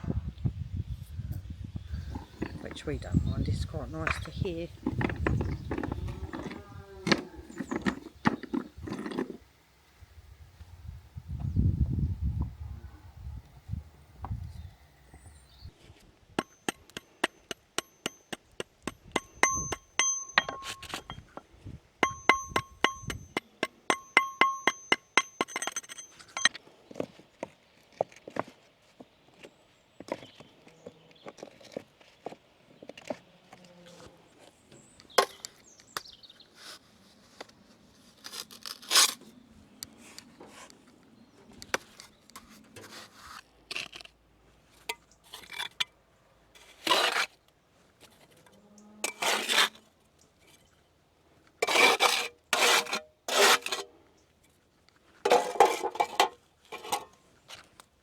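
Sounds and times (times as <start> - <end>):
trowel scraping mortar on stone: 2.1 - 3.1, 38.1 - 39.3, 44.8 - 45.9, 46.5 - 47.5, 49.0 - 49.8, 51.6 - 53.9, 55.2 - 57.7.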